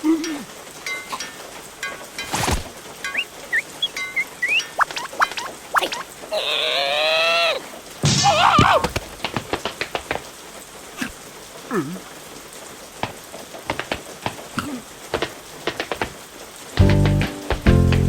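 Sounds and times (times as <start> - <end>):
falling squeak: 2.4 - 6.5
light dripping taps: 3.0 - 6.1
squealing cartoon voices: 3.5 - 8.9.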